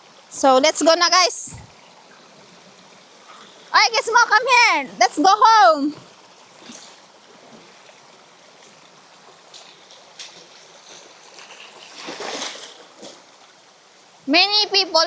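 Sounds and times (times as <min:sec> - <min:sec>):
river water running: 0:00.0 - 0:15.0.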